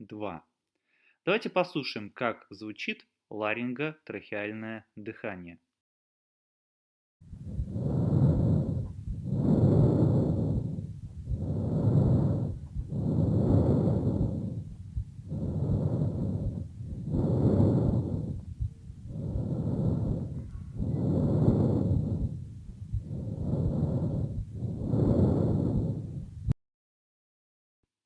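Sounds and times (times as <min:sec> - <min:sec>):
breath sounds through stethoscope: 0:00.8 - 0:01.2, 0:07.3 - 0:26.6.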